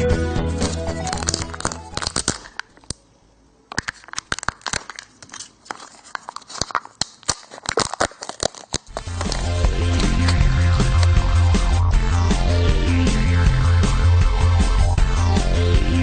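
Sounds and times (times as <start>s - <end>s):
background music: 0.0s - 2.2s, 8.9s - 16.0s
wrapper crinkling and tearing: 0.6s - 3.0s, 3.7s - 11.2s.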